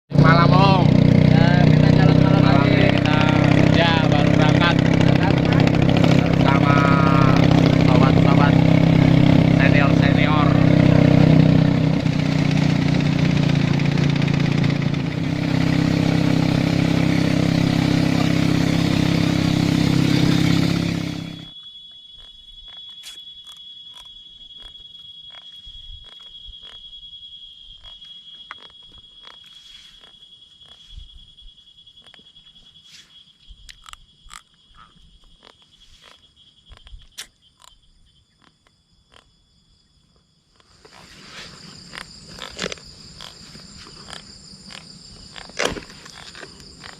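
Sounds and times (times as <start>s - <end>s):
small engine running: 0.1s - 21.6s, 40.6s - 46.9s
high insect tone: 0.1s - 46.9s
frogs croaking and clicking: 0.6s - 19.5s, 20.2s - 46.9s.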